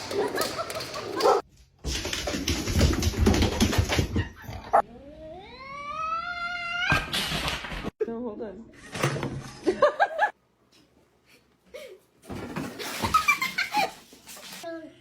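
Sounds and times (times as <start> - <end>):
cat yowling: 5.0 - 7.1.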